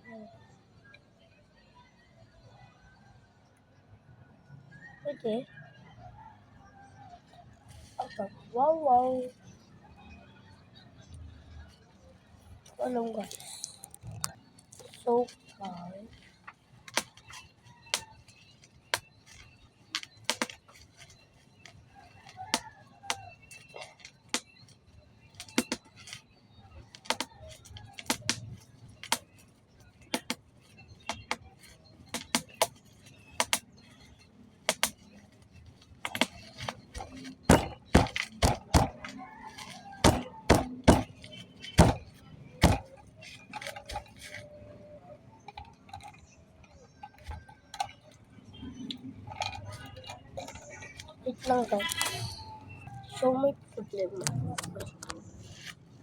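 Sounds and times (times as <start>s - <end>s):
object clicking and knocking: 13.8s - 24.7s, 25.3s - 26.2s, 26.9s - 29.4s, 30.0s - 52.1s.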